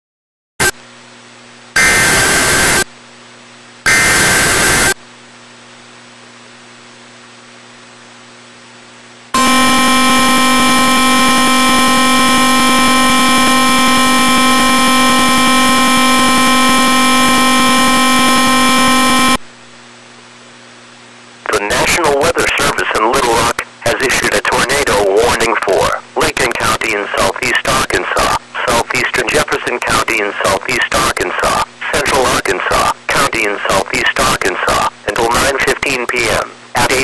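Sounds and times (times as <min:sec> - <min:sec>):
screeching digital header bursts: 0:01.8 - 0:02.8, 0:03.9 - 0:05.0, 0:09.4 - 0:19.4
harsh buzzing attention tone: 0:01.8 - 0:02.9, 0:03.8 - 0:05.0, 0:09.3 - 0:19.4, 0:21.5 - 0:37.0.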